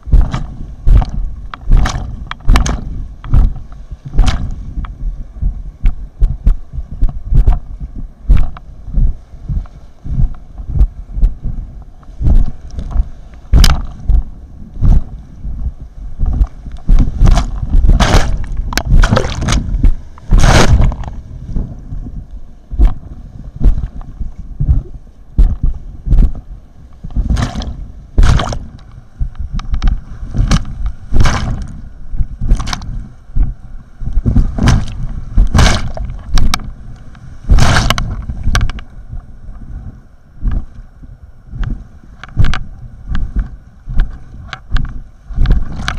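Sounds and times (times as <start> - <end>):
low river rumble: 0.0 - 45.9
waves hitting boat: 0.0 - 45.9
wind buffeting microphone: 0.0 - 45.9
paddle strokes splashing: 30.0 - 33.6.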